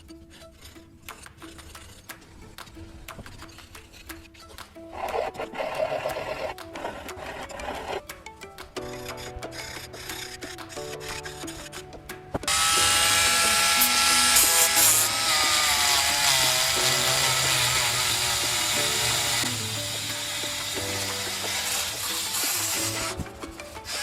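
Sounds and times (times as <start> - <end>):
background music: 0.0 - 24.0
small power tool running: 12.5 - 24.0.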